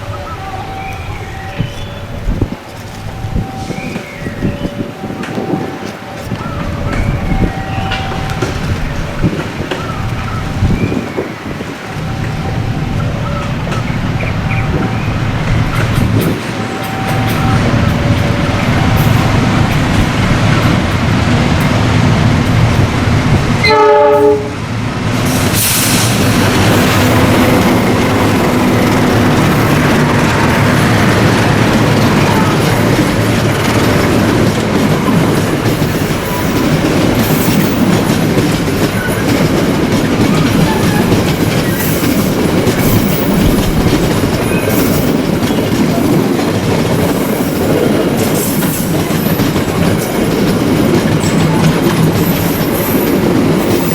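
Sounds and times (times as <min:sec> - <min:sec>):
train wheels rumbling on rails: 0:00.0 - 0:53.9
train horn blast: 0:23.6 - 0:24.7.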